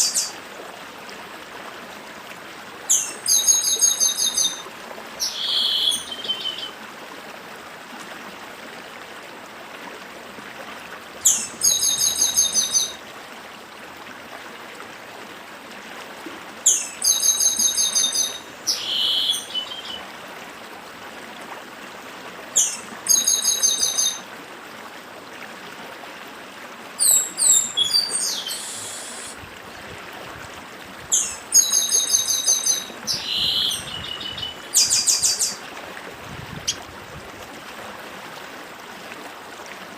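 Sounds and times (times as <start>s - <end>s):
stream rushing: 0.0s - 39.9s
bird singing high notes: 27.0s - 29.4s.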